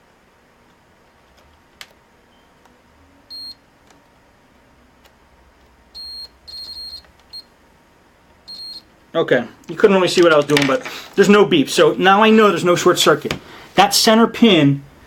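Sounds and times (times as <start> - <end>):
multimeter beeping: 3.3 - 3.6, 6.0 - 7.5, 8.4 - 8.9.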